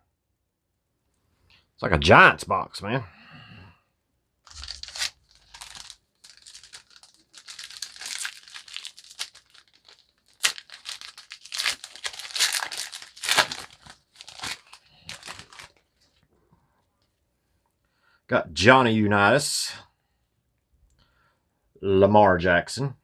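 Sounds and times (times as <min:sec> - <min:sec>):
wrapper tearing and crinkling: 0:04.5 - 0:16.0.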